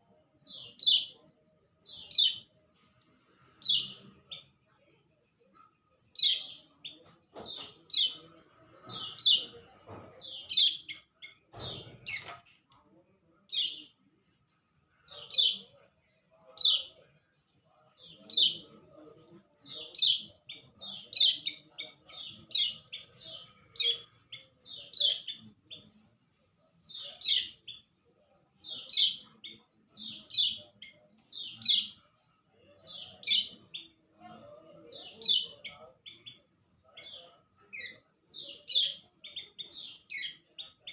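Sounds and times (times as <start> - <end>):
bird chirping: 0.0 - 40.9
knock: 7.3 - 7.8, 9.8 - 10.3.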